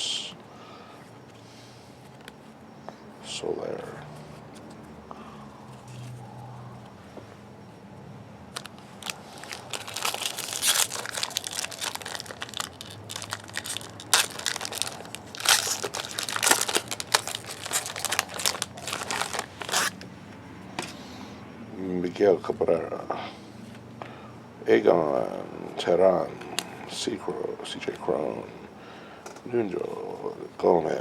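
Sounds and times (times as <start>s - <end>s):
foil wrapper crinkling and tearing: 8.6s - 20.1s.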